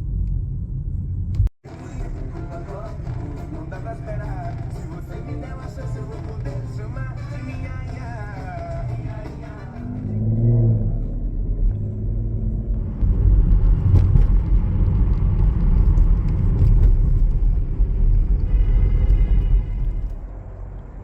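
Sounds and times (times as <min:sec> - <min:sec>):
car engine and road noise: 0:00.0 - 0:21.0
music: 0:01.6 - 0:10.7.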